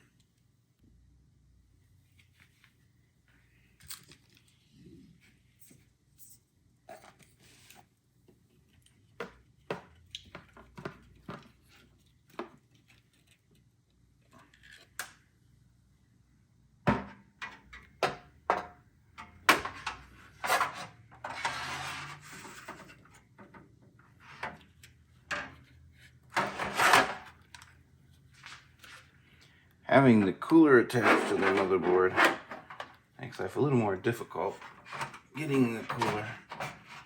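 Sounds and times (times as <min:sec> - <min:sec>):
rubbing and scraping: 0:19.9 - 0:23.1, 0:25.6 - 0:27.4, 0:30.0 - 0:33.6, 0:34.2 - 0:37.0.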